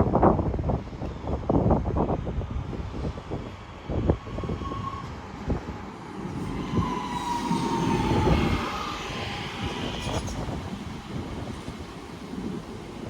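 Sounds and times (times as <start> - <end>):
train wheels rumbling on rails: 0.0 - 13.0
electric train whine: 0.9 - 13.0.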